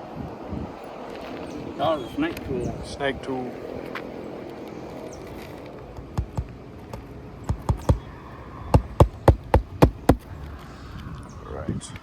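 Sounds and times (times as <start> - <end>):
hammer knocking on roof: 6.1 - 6.5, 7.5 - 8.0, 8.7 - 10.2.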